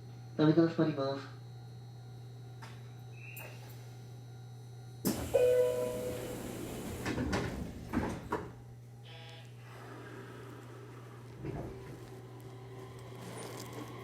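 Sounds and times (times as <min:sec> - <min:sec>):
train doors banging shut: 0:05.1 - 0:08.6
short ringing tone: 0:05.3 - 0:06.4.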